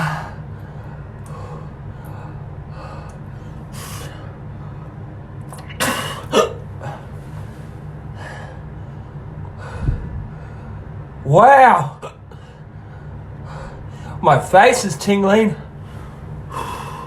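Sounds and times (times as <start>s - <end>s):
steady low hum: 0.0s - 17.0s
man gasping and breathing hard: 9.6s - 10.9s, 15.9s - 17.0s.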